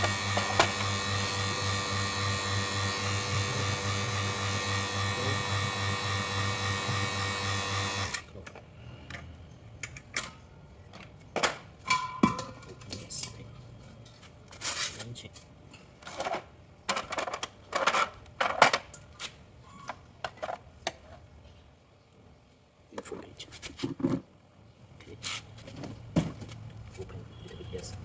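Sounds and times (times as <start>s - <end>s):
vacuum pump humming: 0.0s - 8.2s.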